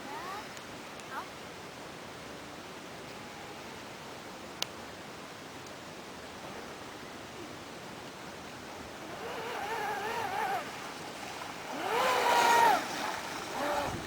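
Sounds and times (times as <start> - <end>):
electric motor whining: 9.0 - 10.7, 11.7 - 14.0
water wash: 9.0 - 14.0
wind noise: 11.8 - 14.0.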